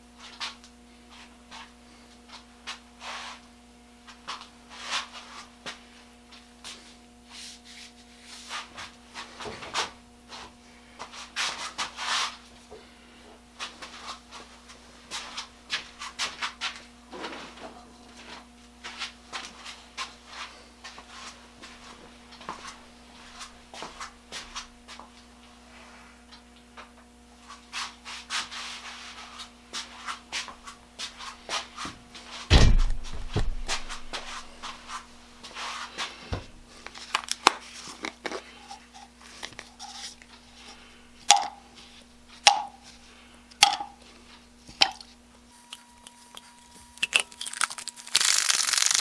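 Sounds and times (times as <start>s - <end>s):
electrical hum: 0.0s - 49.0s.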